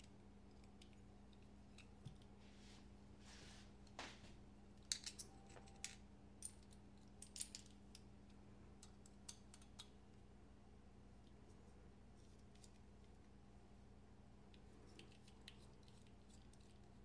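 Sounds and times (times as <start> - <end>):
faint steady hum: 0.0 - 17.0
small clicks of knife parts: 8.8 - 9.9.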